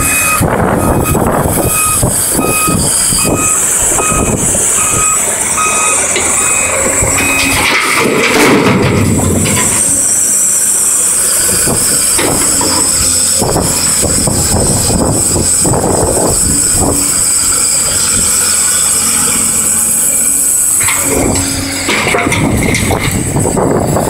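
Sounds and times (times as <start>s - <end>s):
excavator diesel engine running: 0.0s - 24.0s
high steady whine: 0.0s - 24.0s
metallic clanks and scrapes: 5.9s - 24.0s.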